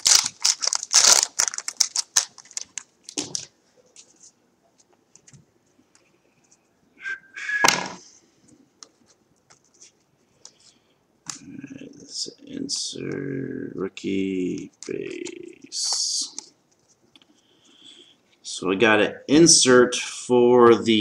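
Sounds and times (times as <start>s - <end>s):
trading cards being handled: 14.3s - 17.4s.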